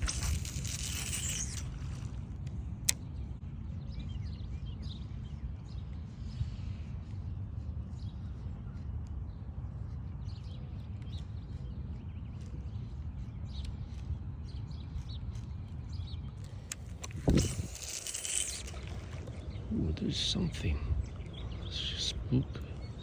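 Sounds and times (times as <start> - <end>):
steady low rumble: 0.0 - 23.0
small birds chirping: 3.0 - 23.0.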